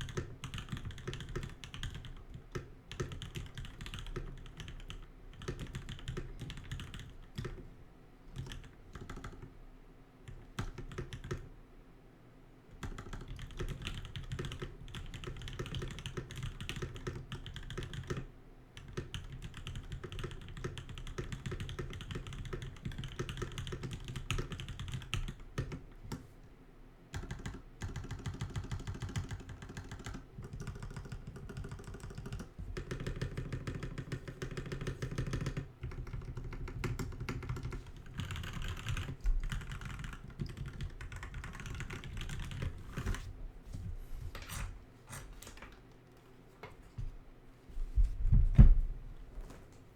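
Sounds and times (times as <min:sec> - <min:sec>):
fast typing on mechanical keyboard: 0:00.0 - 0:07.7, 0:08.3 - 0:09.5, 0:10.3 - 0:11.5, 0:12.7 - 0:26.2, 0:27.1 - 0:43.2.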